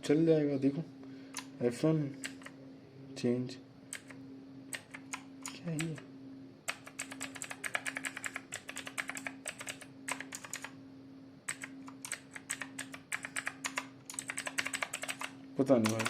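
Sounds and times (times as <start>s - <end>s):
steady low hum: 0.0s - 16.0s
mechanical keyboard key clicks: 11.5s - 16.0s.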